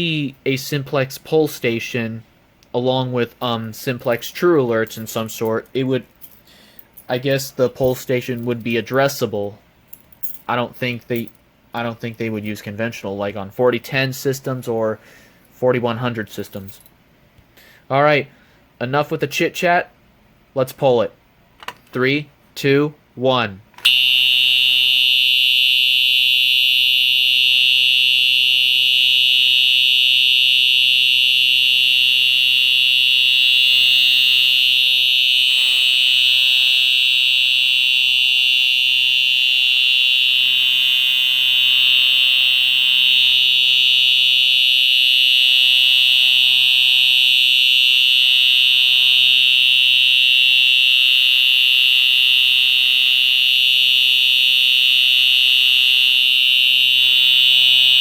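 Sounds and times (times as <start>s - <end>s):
high-pitched electronic alarm tone: 23.9s - 58.0s.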